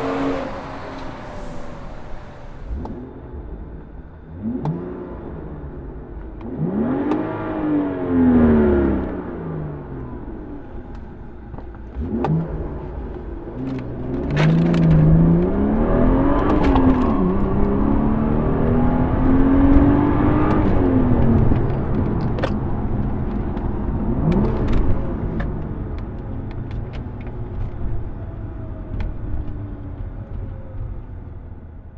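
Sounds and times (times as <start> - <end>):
car engine revving: 0.0 - 3.5.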